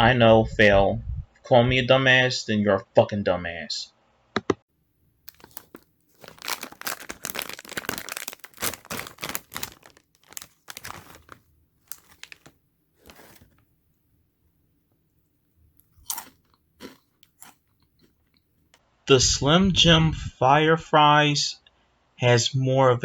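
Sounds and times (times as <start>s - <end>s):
plastic bag crinkling: 5.2s - 13.6s.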